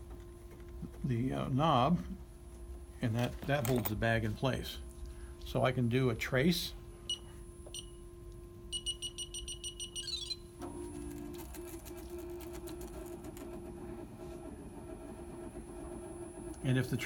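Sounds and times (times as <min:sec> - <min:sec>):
embroidery machine motor hum: 0:00.0 - 0:17.0
control panel beeps: 0:07.1 - 0:08.0, 0:08.7 - 0:10.5.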